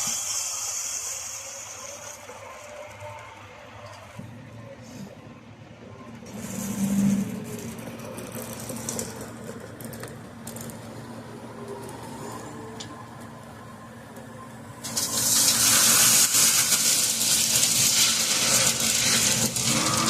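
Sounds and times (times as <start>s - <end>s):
diesel engine running: 2.6s - 15.4s
stone pouring from a bucket: 14.8s - 20.0s.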